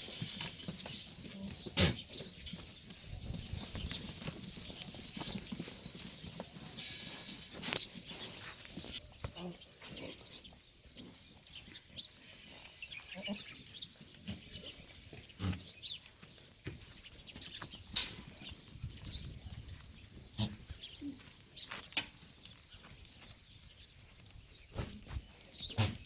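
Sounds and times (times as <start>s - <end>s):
goats calling: 20.1s - 21.8s.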